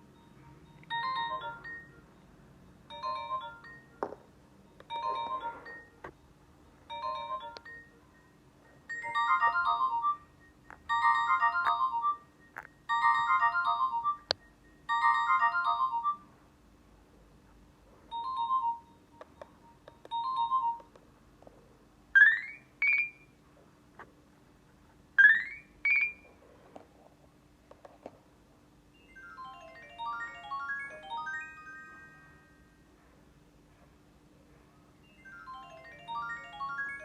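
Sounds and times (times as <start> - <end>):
electronic ringtone melody: 0.0 - 16.4, 18.1 - 21.0, 22.2 - 23.3, 25.2 - 26.3, 29.0 - 32.8, 35.0 - 37.0.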